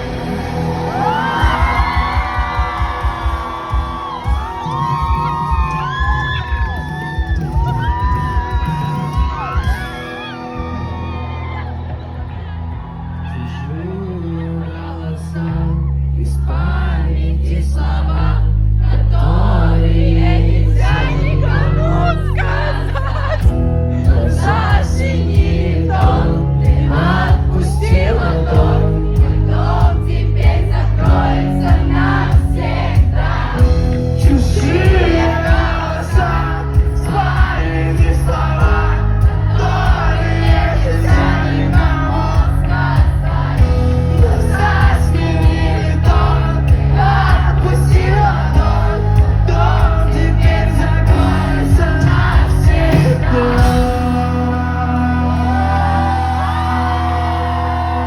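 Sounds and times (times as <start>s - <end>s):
steady drum beat: 0.0s - 10.3s, 23.4s - 54.4s
sung vocals: 0.0s - 10.3s, 13.2s - 58.0s
live rock band playing: 0.0s - 12.6s, 22.5s - 58.0s
heavy bass: 0.0s - 58.0s.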